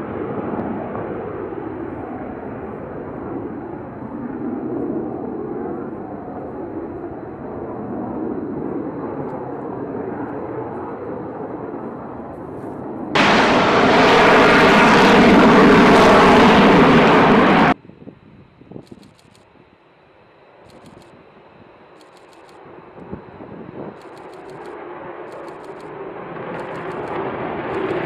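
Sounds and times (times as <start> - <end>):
jet rumble: 0.0 - 19.0
loud jet roar: 13.2 - 17.8.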